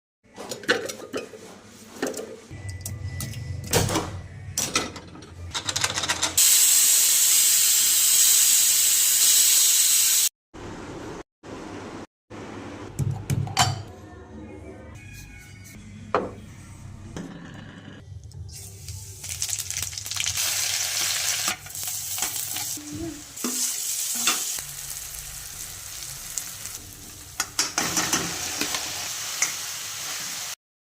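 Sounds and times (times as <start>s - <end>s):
cooking hiss: 6.4s - 10.3s, 18.6s - 30.6s
food sizzling in hot oil: 6.4s - 10.3s, 18.7s - 30.6s
cookware clinking: 23.4s - 24.6s.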